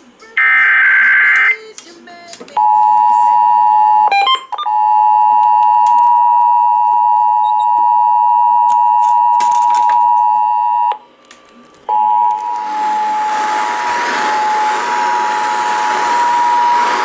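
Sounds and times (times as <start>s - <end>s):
two-tone alert signal: 0.4s - 1.6s, 2.6s - 11.0s
short beeps: 2.6s - 11.0s.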